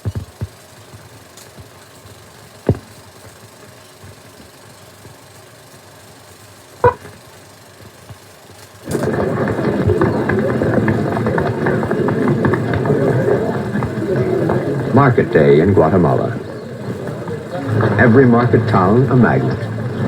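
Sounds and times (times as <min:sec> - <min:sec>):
film soundtrack hiss and hum: 0:00.0 - 0:20.0
short tone blip: 0:06.8 - 0:07.2.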